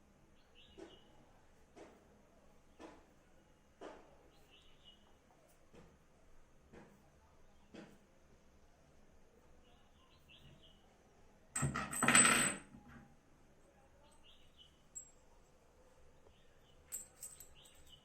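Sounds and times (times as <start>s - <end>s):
faint bird chirps: 4.2s - 5.6s, 9.4s - 11.0s, 13.8s - 15.0s
metal parts clinking: 11.6s - 12.7s, 16.9s - 18.0s.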